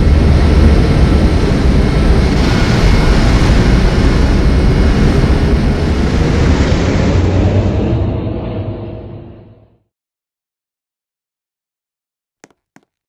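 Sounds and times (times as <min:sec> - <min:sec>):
train running rumble: 0:00.0 - 0:09.7.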